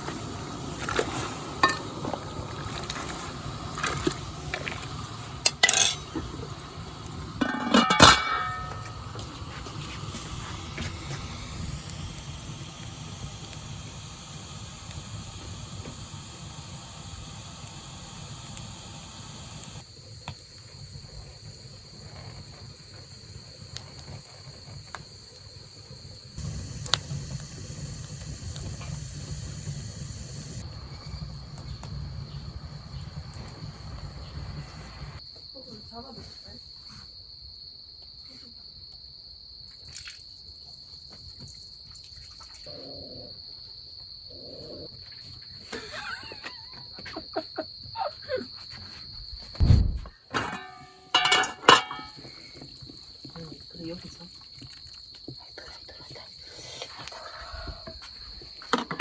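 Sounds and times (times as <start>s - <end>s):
pot steaming hiss: 0.0s - 35.2s, 45.6s - 46.8s, 50.2s - 59.0s
cricket trill: 0.0s - 59.0s
metal pot clanking: 1.6s - 2.1s, 5.4s - 6.5s, 7.4s - 9.2s, 50.3s - 52.5s.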